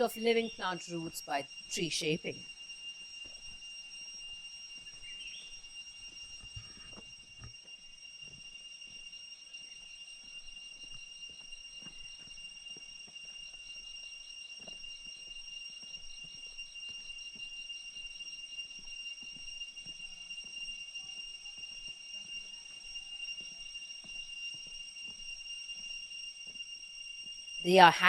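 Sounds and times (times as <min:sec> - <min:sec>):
insect whistling call: 0:00.0 - 0:27.5
rapidly pulsing insect call: 0:00.0 - 0:28.0.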